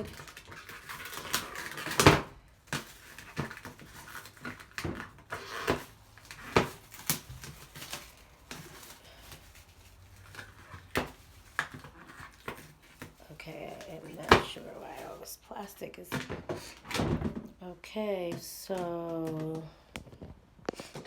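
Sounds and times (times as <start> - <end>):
packaging rustle: 0.0 - 15.4.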